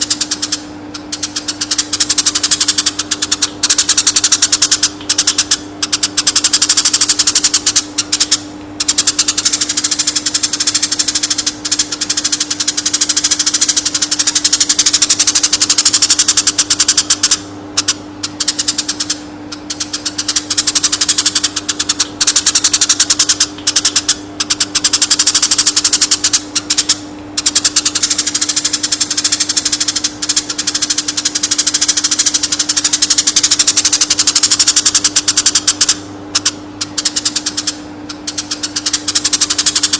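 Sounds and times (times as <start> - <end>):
steady low hum: 0.0 - 39.9.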